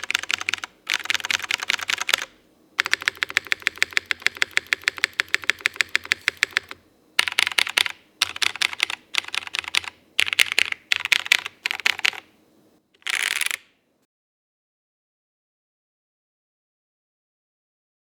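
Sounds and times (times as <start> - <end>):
mechanical keyboard typing: 0.0 - 12.3, 13.0 - 13.7.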